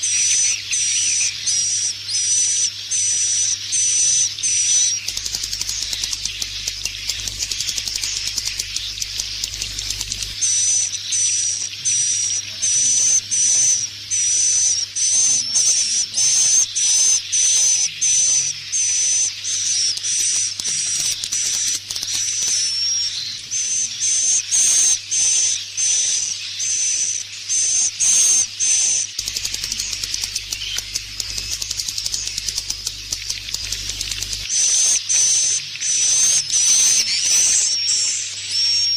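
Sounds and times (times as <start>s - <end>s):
hissing chatter of many birds: 0.0s - 38.9s.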